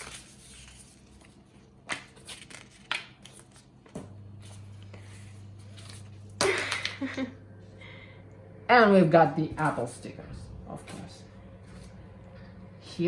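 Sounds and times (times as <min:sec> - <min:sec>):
paper packaging rustling: 0:00.0 - 0:06.4
steady low hum: 0:03.1 - 0:13.0.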